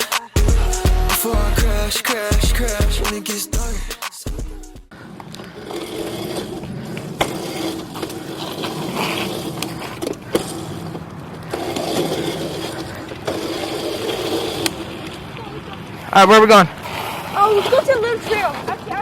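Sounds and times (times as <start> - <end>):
chain and drivetrain rattle: 5.4 - 15.4.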